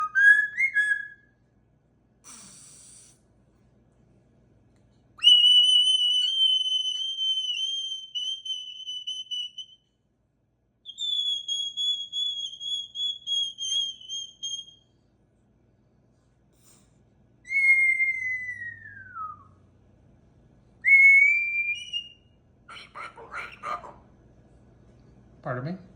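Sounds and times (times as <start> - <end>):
cockatoo whistling: 0.0 - 1.4, 5.2 - 9.9, 10.9 - 14.9, 17.4 - 19.6, 20.8 - 23.9
cockatoo hissing burst: 2.2 - 3.2.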